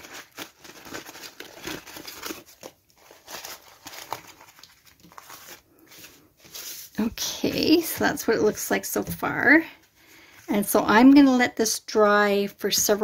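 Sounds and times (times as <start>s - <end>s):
damp paper crumpling: 0.0s - 8.5s.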